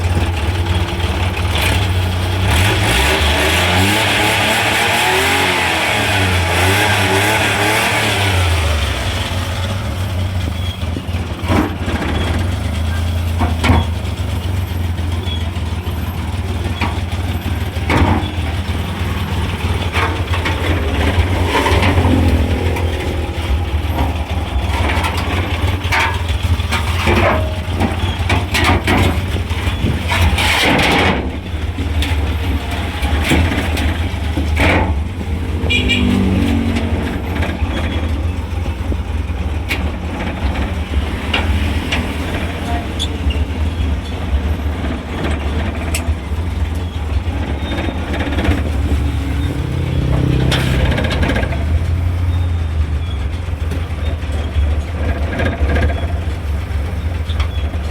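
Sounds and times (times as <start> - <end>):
engine running: 0.0 - 57.9.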